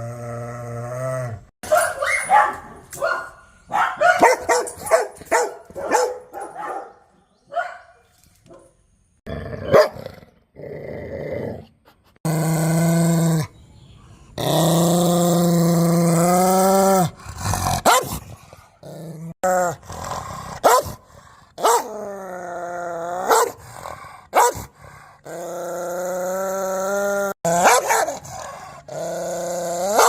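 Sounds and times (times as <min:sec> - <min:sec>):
dogs barking: 0:01.6 - 0:08.7, 0:09.6 - 0:10.0, 0:17.8 - 0:18.2, 0:20.6 - 0:21.0, 0:21.6 - 0:21.9, 0:23.3 - 0:23.6, 0:24.3 - 0:24.7, 0:27.5 - 0:28.7.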